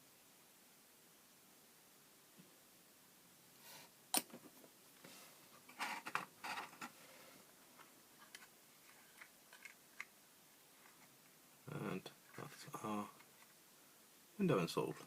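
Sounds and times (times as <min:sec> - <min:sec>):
rustling: 0:03.5 - 0:13.9.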